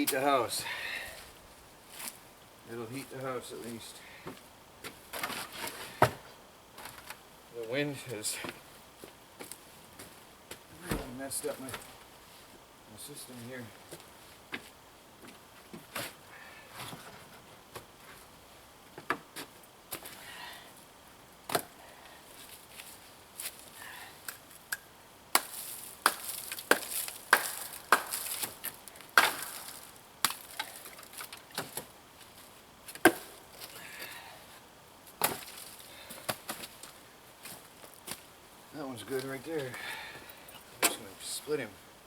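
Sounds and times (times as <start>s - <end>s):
firewood being chopped: 4.8s - 7.1s, 21.5s - 21.8s, 24.2s - 31.9s, 32.9s - 33.8s, 35.1s - 38.2s.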